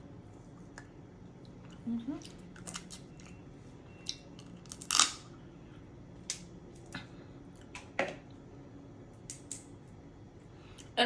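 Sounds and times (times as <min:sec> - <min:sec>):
chewing crab: 0:00.4 - 0:05.3
crab shell clicks and cracks: 0:09.3 - 0:09.7.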